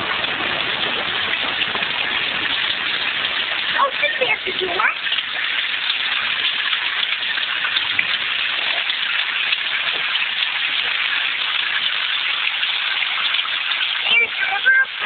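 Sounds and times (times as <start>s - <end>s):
river rushing in flood: 0.0s - 5.0s.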